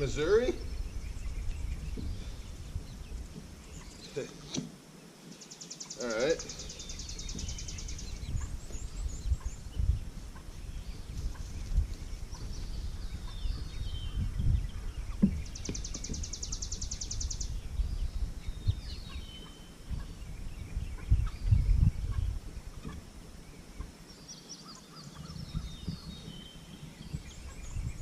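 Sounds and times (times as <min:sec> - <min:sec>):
low rumbling and thumps: 0:00.0 - 0:04.7, 0:06.4 - 0:23.9, 0:25.2 - 0:28.0
chicks peeping and chirping: 0:06.3 - 0:28.0.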